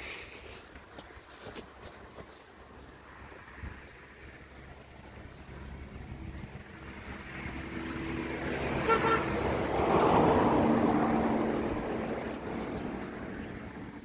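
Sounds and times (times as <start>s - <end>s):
vehicle engine passing by: 3.1s - 14.0s
double horn toot: 8.7s - 9.8s.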